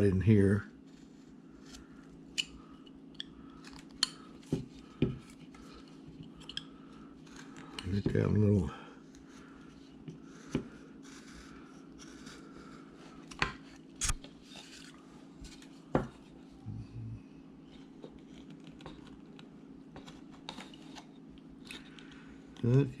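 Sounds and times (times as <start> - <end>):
knife slicing and scraping wood: 13.6 - 14.9.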